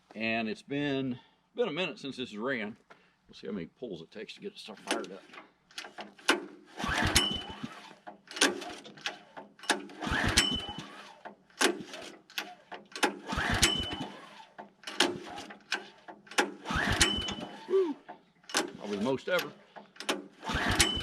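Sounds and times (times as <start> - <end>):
recoil starter pulls: 4.8 - 21.0
engine turning over: 5.8 - 17.8, 18.5 - 21.0.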